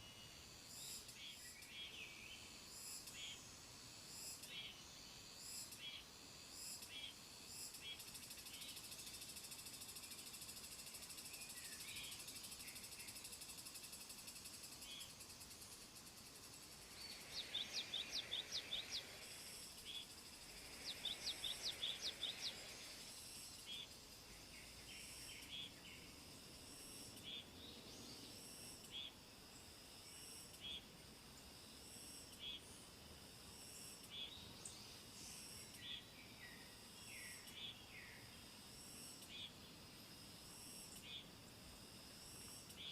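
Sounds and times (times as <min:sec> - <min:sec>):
insects trilling: 0:00.0 - 0:42.9
birds chirping: 0:16.8 - 0:22.9.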